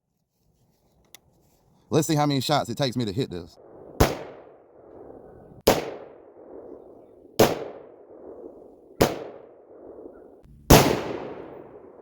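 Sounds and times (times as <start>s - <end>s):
rifle gunshots with echo: 3.6s - 12.0s.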